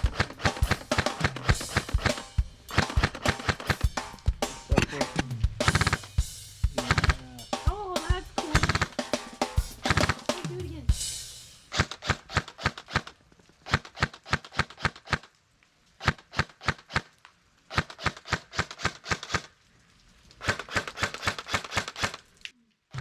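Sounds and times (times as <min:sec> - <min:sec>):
airsoft rifle bursts: 0:00.0 - 0:06.1, 0:08.1 - 0:10.6, 0:11.7 - 0:15.3, 0:16.0 - 0:17.1, 0:17.7 - 0:19.5, 0:20.4 - 0:22.3.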